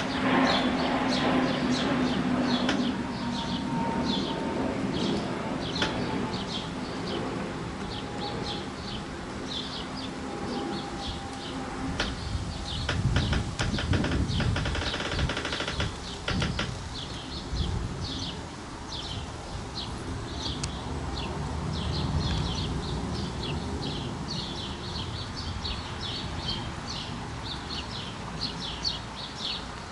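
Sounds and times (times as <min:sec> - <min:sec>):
small birds chirping: 0:00.0 - 0:29.9
rapid bird trill: 0:12.0 - 0:17.3.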